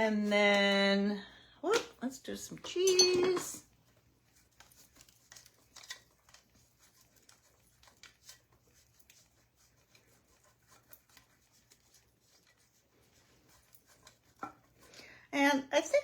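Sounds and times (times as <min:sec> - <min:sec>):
cheese sprinkling onto casserole: 0:03.5 - 0:14.9.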